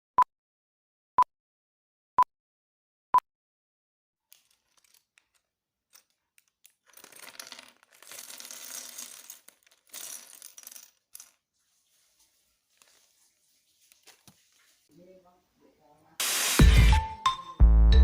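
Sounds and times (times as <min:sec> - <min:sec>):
plastic building blocks clattering: 0:04.3 - 0:11.4.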